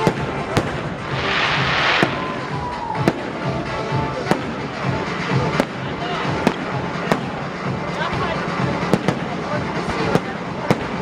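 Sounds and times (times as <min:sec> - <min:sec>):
hissing crackling firework burst: 0:00.0 - 0:03.5
firework shells bursting: 0:00.0 - 0:03.6.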